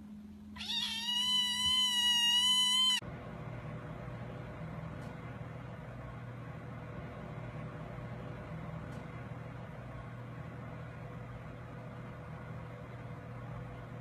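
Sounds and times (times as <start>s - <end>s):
low hum with hiss: 0.0s - 14.0s
cat meowing: 0.6s - 3.0s.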